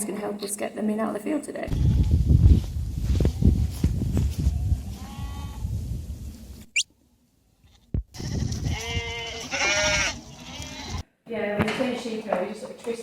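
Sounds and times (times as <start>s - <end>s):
sheep bleating: 7.7s - 11.0s.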